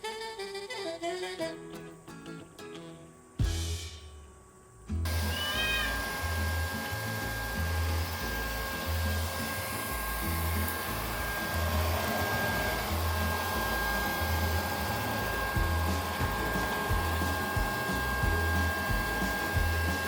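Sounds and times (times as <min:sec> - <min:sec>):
robot vacuum cleaner motor whir: 0:05.1 - 0:20.0.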